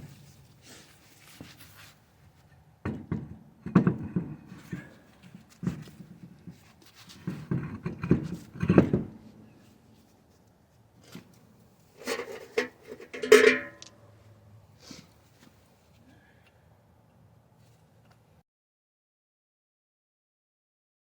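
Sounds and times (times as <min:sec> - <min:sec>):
tools and car parts clattering: 0:12.0 - 0:14.0.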